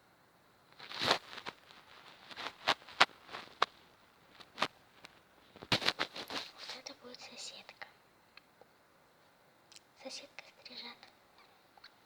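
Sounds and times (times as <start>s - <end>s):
plastic rustle: 0.8s - 6.8s.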